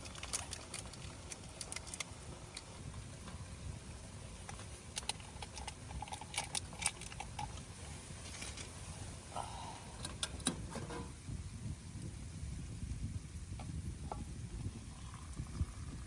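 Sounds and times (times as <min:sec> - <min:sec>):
small hard objects clinking: 0:00.0 - 0:02.8.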